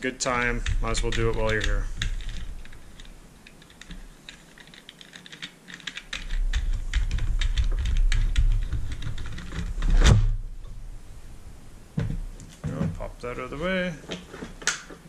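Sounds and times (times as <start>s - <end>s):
plastic parts clicking: 0.3s - 9.9s.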